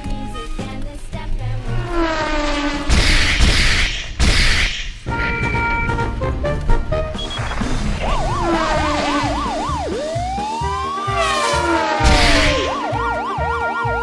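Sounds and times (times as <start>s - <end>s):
hissing whoosh: 1.4s - 10.5s
siren yelping: 1.5s - 14.0s
background music with beat: 5.1s - 14.0s.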